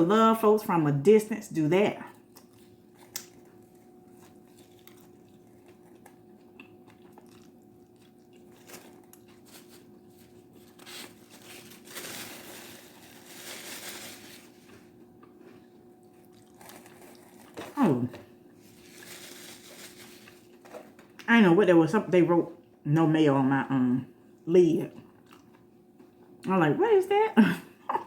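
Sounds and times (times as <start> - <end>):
person chewing food: 2.1 - 11.4, 14.6 - 17.8, 25.0 - 26.3.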